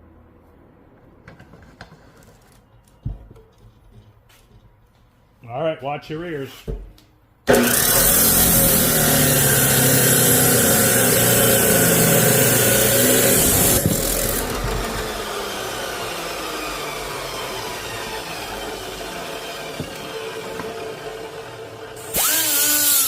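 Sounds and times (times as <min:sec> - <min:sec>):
power tool grinding steel: 0:07.5 - 0:23.0
power tool winding down: 0:07.5 - 0:23.0.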